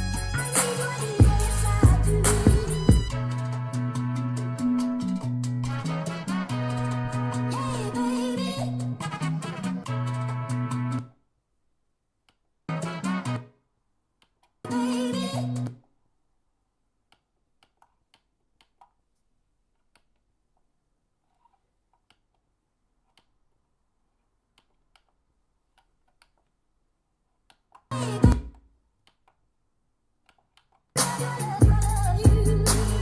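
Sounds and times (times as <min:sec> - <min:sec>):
music through speakers: 0:00.0 - 0:11.0, 0:27.9 - 0:28.5, 0:31.0 - 0:33.0.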